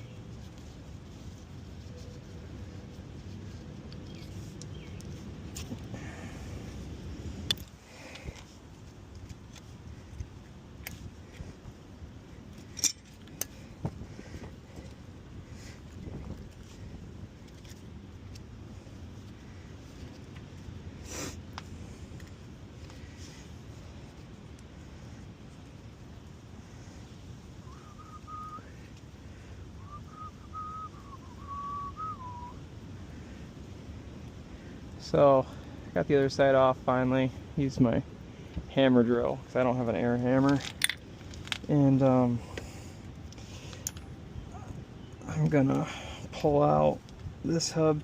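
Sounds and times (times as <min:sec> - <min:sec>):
low background noise: 0:00.0 - 0:48.0
metallic clinks and taps: 0:12.6 - 0:13.5
person whistling a tune: 0:27.6 - 0:28.7, 0:29.8 - 0:32.6.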